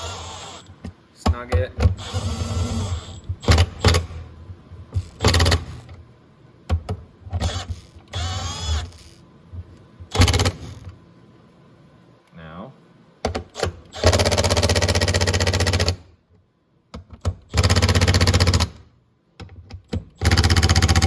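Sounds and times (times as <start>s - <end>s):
cordless power driver running: 0.0s - 0.7s, 2.0s - 3.9s.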